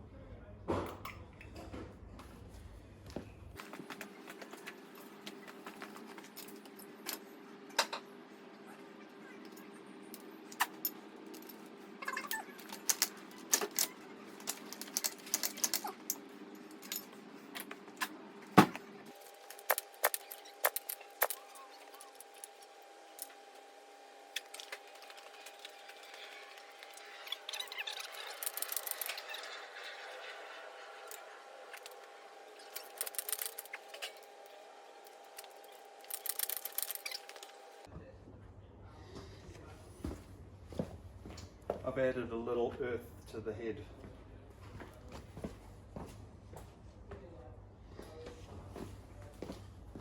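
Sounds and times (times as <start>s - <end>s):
steady hum: 2.6s - 37.9s
hand tools clinking: 10.2s - 17.8s, 19.2s - 22.5s, 24.4s - 29.5s, 32.6s - 34.2s, 35.4s - 37.5s.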